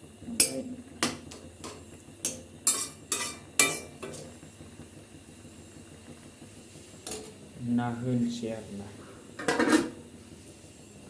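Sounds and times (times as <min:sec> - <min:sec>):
faint steady hiss: 0:00.0 - 0:11.0
metal utensil clinking on pot: 0:01.6 - 0:04.2.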